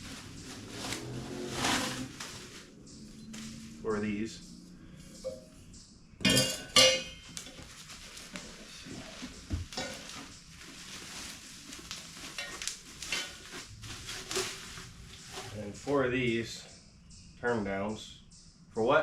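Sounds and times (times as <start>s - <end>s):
rustling: 0.0s - 5.8s, 6.4s - 16.0s
metal pieces clanking: 6.2s - 7.4s.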